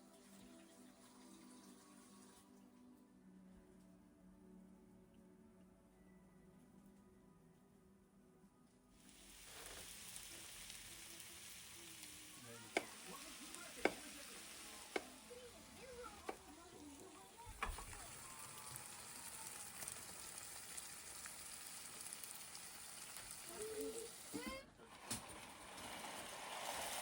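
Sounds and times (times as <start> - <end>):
food sizzling in a frying pan: 9.0 - 27.0
utensil knocking against pan: 13.8 - 14.2.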